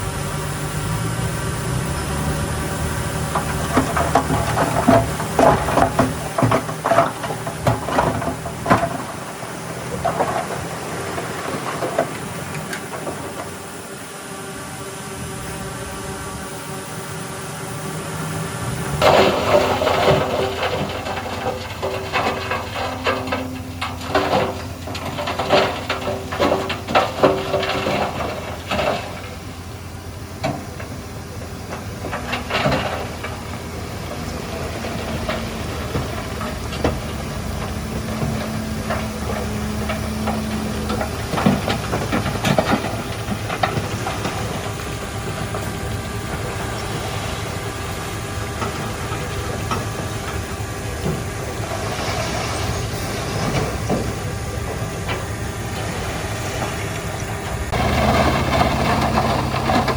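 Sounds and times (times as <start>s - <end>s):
diesel machinery running: 0.0s - 59.9s
metallic clanking and rattling: 3.1s - 13.8s, 18.9s - 59.9s.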